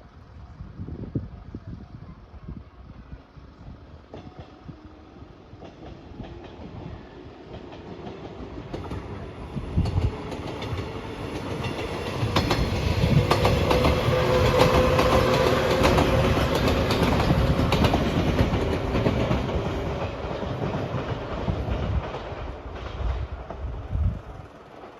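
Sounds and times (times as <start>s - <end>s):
electric train passing: 0.0s - 24.9s
wheels clacking over rail joints: 9.8s - 23.7s.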